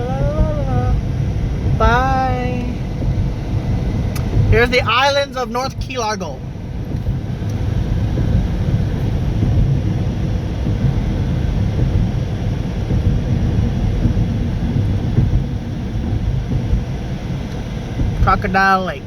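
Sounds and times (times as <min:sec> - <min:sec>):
car road and wind noise: 0:00.0 - 0:19.0.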